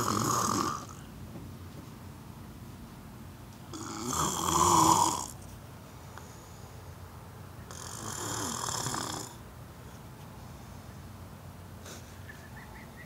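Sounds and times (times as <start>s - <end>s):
man snoring: 0.0s - 1.0s, 3.7s - 5.4s, 7.7s - 9.4s.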